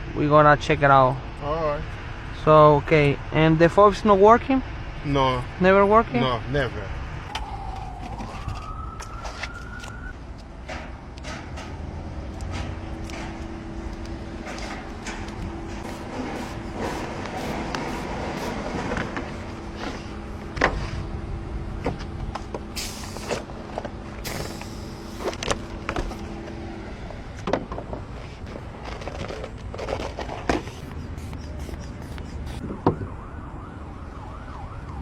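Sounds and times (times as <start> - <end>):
street noise: 0.0 - 35.0
wavering siren: 7.1 - 10.2, 30.8 - 35.0
steady hum: 14.3 - 21.8, 30.5 - 32.8
short hisses: 22.8 - 23.4, 24.2 - 25.2.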